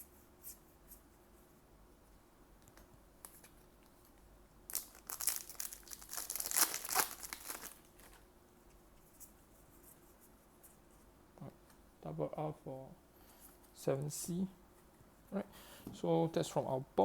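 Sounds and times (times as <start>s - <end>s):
card pack wrapper tearing: 4.7s - 7.8s.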